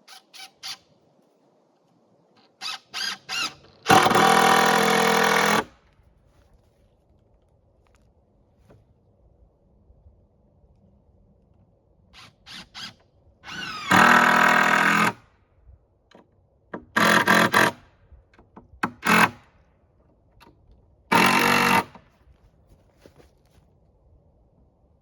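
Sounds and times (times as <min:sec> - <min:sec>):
power drill driving screws into wood: 0:02.6 - 0:05.7, 0:12.2 - 0:15.2, 0:16.8 - 0:17.8, 0:18.8 - 0:19.4, 0:21.1 - 0:22.0.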